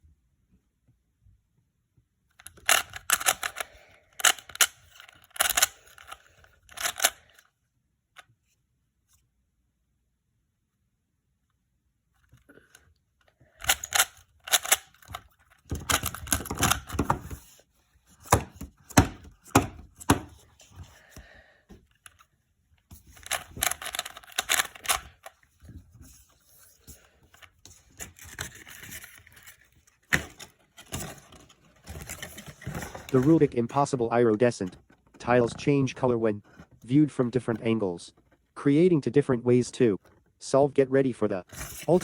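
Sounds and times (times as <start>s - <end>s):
hands handling plastic: 2.4s - 7.5s, 13.5s - 38.6s, 41.5s - 42.0s
plastic clicks and knocks: 13.6s - 17.5s, 18.2s - 20.4s.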